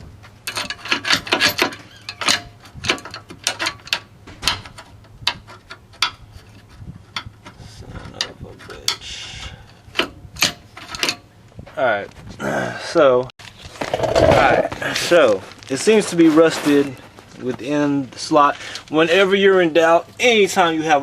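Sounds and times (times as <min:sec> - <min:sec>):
hand tools clanking on metal: 0:00.4 - 0:11.3
scraping rub: 0:13.6 - 0:17.2.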